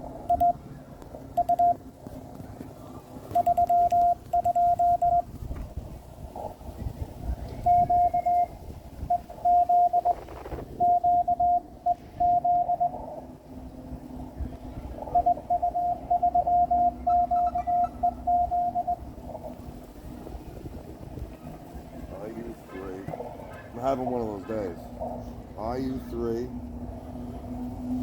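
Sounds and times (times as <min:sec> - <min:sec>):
faint lower morse code signal: 0:00.3 - 0:00.6, 0:01.4 - 0:01.8, 0:03.3 - 0:05.3, 0:07.5 - 0:13.2, 0:15.0 - 0:19.4
morse code tone: 0:00.3 - 0:00.6, 0:01.4 - 0:01.8, 0:03.3 - 0:05.3, 0:07.6 - 0:13.0, 0:15.0 - 0:19.1.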